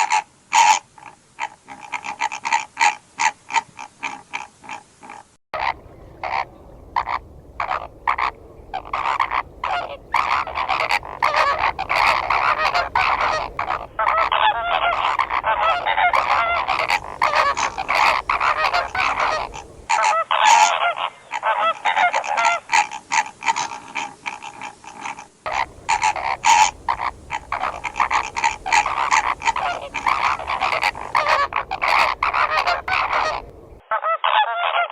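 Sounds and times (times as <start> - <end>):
flamingos honking: 0.0 - 34.9.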